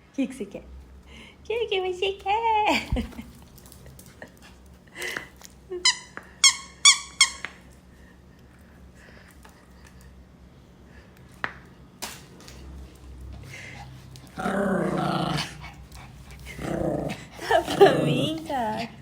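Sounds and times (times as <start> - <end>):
dog growling: 13.8 - 19.0.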